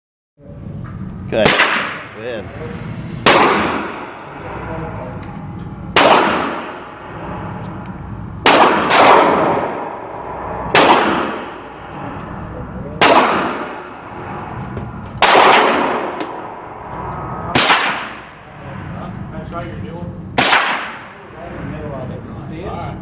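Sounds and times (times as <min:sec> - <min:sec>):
single gunshots: 0:01.4 - 0:02.2, 0:03.3 - 0:04.0, 0:06.0 - 0:06.8, 0:08.4 - 0:09.9, 0:10.7 - 0:11.5, 0:13.0 - 0:13.8, 0:15.2 - 0:16.5, 0:17.5 - 0:18.3, 0:20.4 - 0:21.0.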